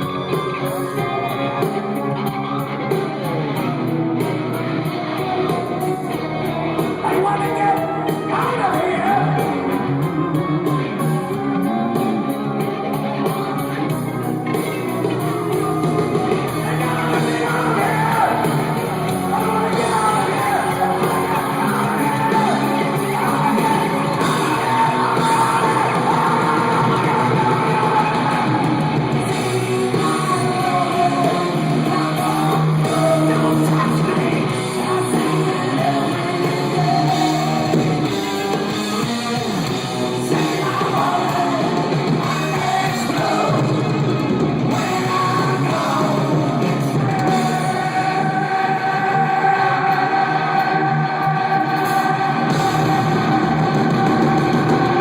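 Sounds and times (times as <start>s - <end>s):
live rock band playing: 0.0s - 55.0s
person singing: 14.6s - 44.0s, 44.7s - 55.0s.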